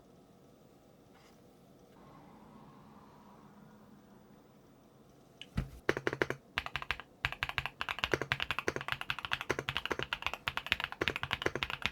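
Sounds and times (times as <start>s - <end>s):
mechanical keyboard typing: 5.4s - 11.9s.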